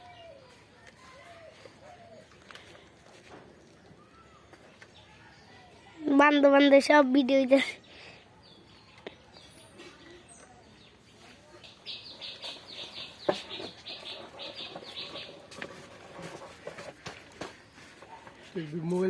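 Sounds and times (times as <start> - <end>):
bird chirping: 7.8 - 15.8.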